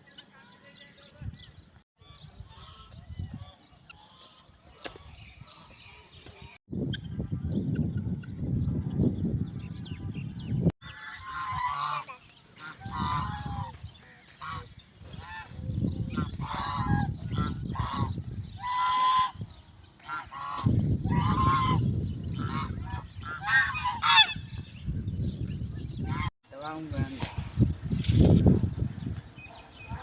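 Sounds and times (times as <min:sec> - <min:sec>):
farm birds honking: 0:02.0 - 0:06.5, 0:10.8 - 0:24.8.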